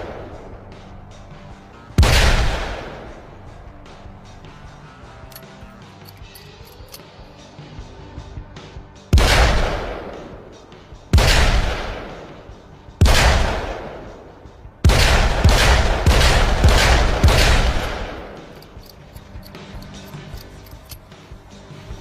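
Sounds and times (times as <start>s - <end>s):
revolver gunshots echoing: 0.0s - 4.8s, 9.1s - 18.9s.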